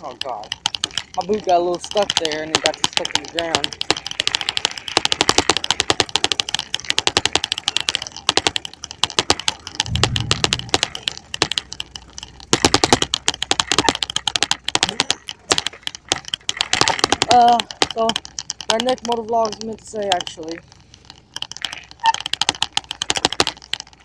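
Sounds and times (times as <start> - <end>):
bicycle rattling on dirt road: 0.0 - 24.0
low hum: 9.5 - 16.5.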